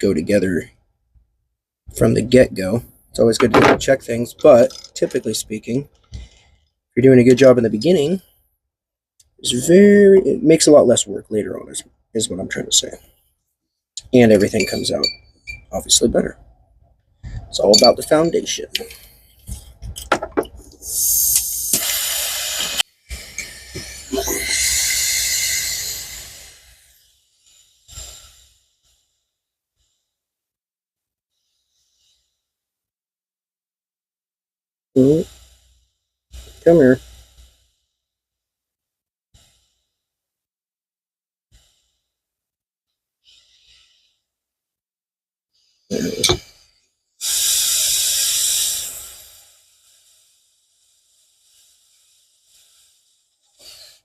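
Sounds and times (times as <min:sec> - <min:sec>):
gas torch flame hissing: 0:20.8 - 0:28.6, 0:47.2 - 0:53.9
breathy exhale: 0:20.8 - 0:30.2, 0:35.2 - 0:38.0, 0:39.4 - 0:40.1, 0:41.5 - 0:42.2, 0:43.2 - 0:44.2, 0:47.2 - 0:54.0.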